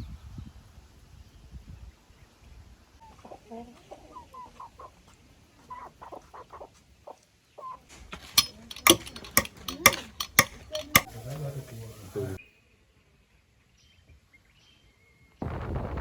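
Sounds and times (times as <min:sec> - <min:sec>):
chickens clucking: 0:03.0 - 0:12.4
hammer driving nails into timber: 0:08.2 - 0:11.3.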